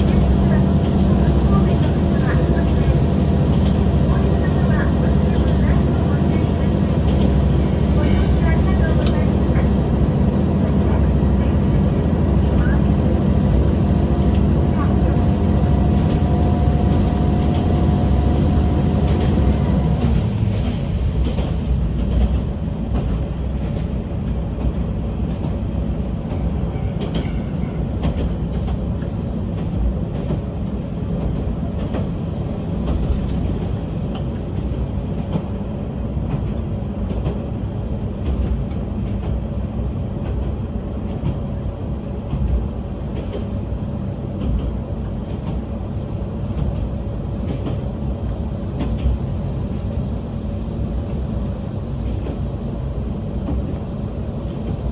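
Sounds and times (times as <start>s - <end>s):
train engine and wheels rumbling: 0.0s - 54.9s.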